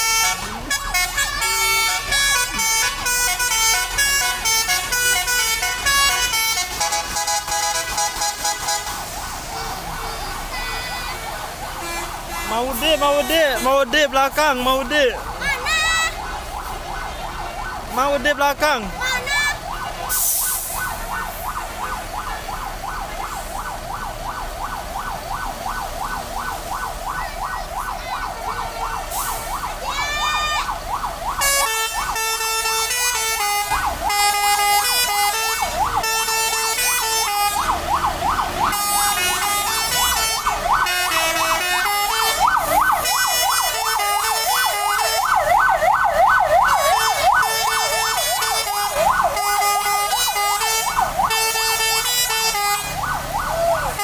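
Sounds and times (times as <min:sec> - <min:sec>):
musical bus horn warbling: 0:00.0 - 0:13.7, 0:31.4 - 0:37.9, 0:38.7 - 0:45.3, 0:46.6 - 0:53.0.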